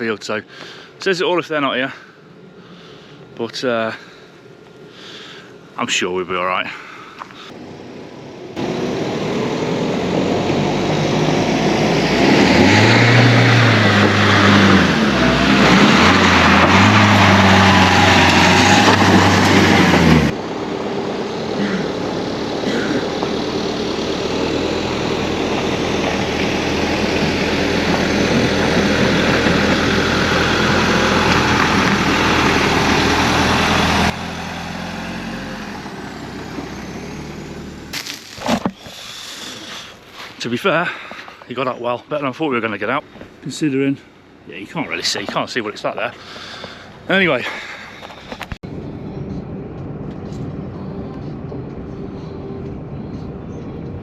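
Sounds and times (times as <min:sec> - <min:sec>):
van engine revving: 0:07.4 - 0:54.0
tyre noise: 0:37.9 - 0:41.5.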